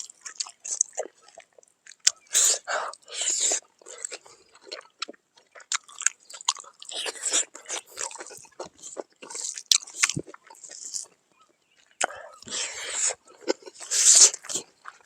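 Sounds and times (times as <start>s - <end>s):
person chewing: 0.0s - 15.0s.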